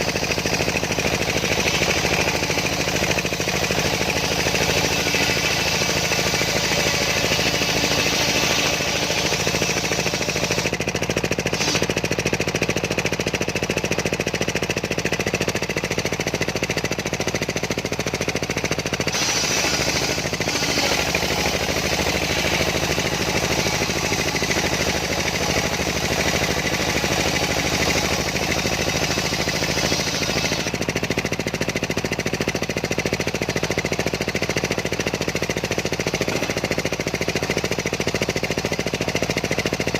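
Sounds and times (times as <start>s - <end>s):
saw blade rasping through wood: 0.1s - 10.8s, 11.6s - 12.0s, 19.1s - 30.9s.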